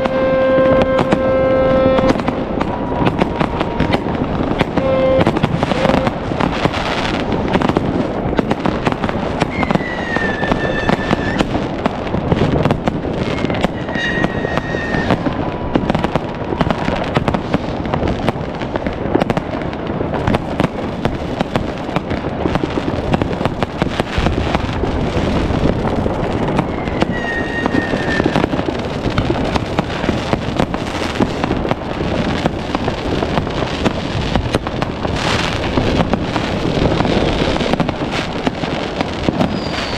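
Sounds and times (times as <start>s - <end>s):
fireworks crackling and popping: 0.0s - 39.9s
sharp firework bangs: 0.0s - 39.9s
high falling whistle: 39.5s - 39.9s.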